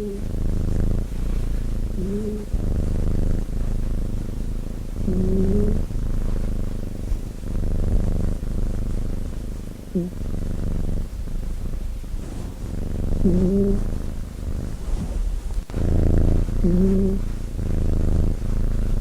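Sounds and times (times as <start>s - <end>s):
cat snoring: 0.0s - 19.0s.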